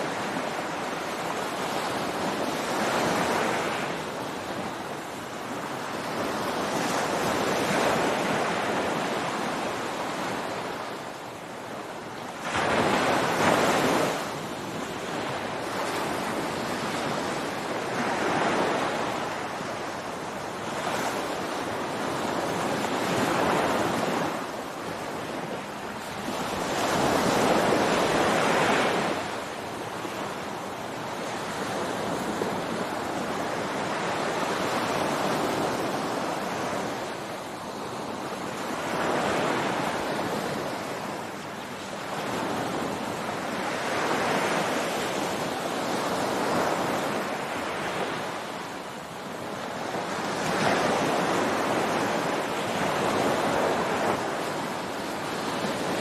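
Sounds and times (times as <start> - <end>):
ocean surf breaking on beach: 0.0 - 56.0.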